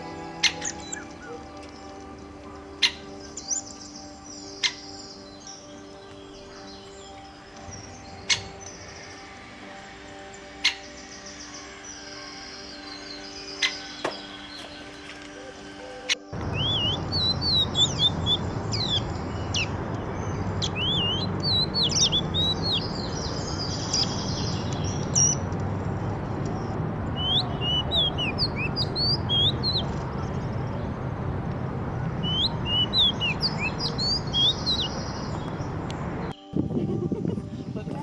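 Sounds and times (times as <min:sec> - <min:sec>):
small birds chirping: 0:00.0 - 0:36.4
low rumble: 0:16.4 - 0:36.4.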